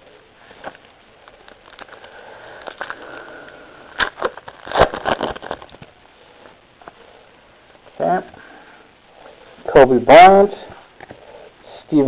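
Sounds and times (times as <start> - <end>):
foil wrapper crinkling and tearing: 1.2 - 5.9.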